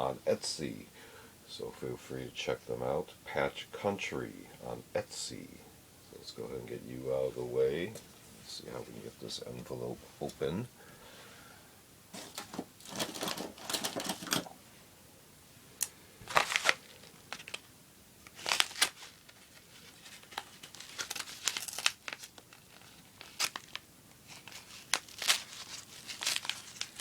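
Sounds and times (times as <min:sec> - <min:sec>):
envelope tearing and crinkling: 0:12.2 - 0:14.5, 0:16.2 - 0:27.0.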